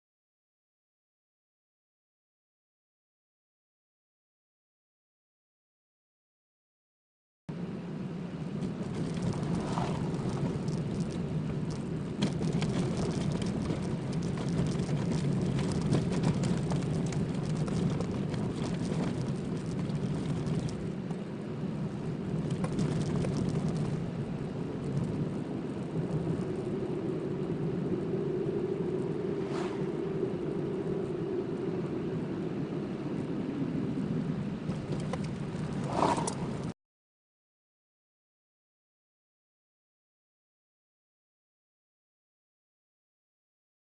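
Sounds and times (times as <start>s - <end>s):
car engine and tyre drone: 7.5s - 36.7s
road surface crackling: 7.6s - 36.7s.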